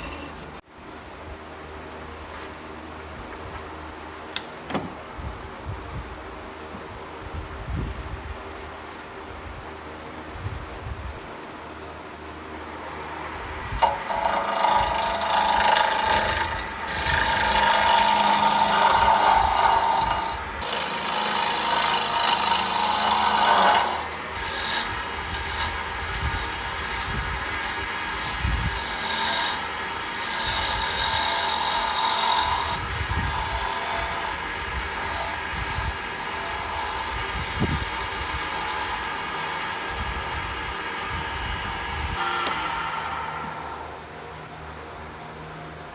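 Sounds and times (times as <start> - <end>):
power tool cutting wood: 13.8 - 43.9.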